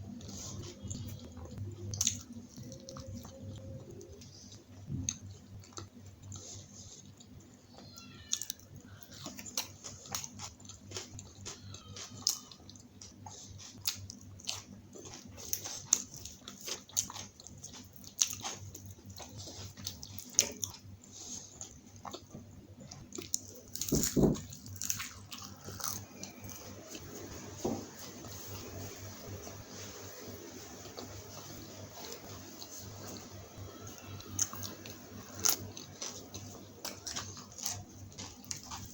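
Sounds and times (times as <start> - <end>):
faint low hum: 0.0 - 38.9
person chewing food: 0.1 - 38.9
thump: 24.0 - 24.5.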